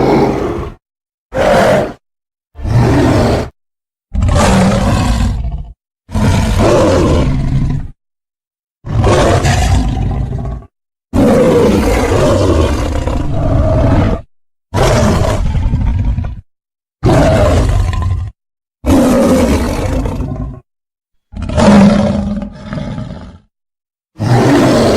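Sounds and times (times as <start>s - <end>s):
monster roars: 0.0s - 2.0s, 2.6s - 3.5s, 4.1s - 8.0s, 8.9s - 16.4s, 17.0s - 18.3s, 18.9s - 20.6s, 24.2s - 24.9s.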